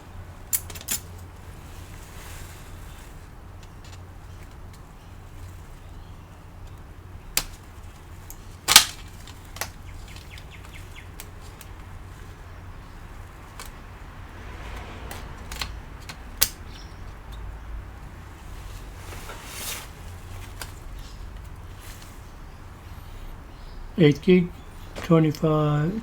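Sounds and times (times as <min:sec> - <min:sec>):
metal cover snapping off: 0:08.7 - 0:09.8.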